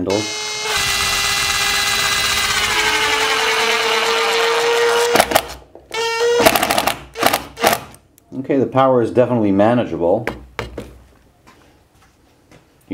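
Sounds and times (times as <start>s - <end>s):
impact driver motor whine: 0.0s - 8.0s
impact driver sharp bursts: 0.2s - 8.0s.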